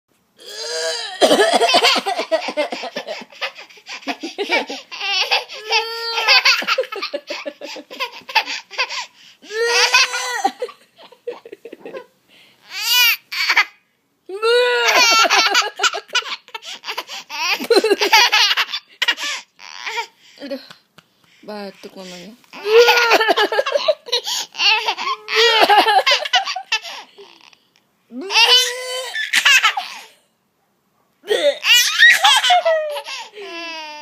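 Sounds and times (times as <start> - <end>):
child laughing: 1.2 - 12.2, 14.6 - 19.4, 22.6 - 27.4, 31.3 - 33.9.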